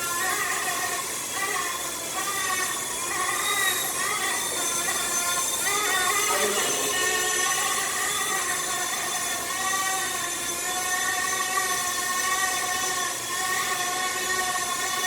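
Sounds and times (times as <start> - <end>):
model helicopter motor whine: 0.0 - 15.0.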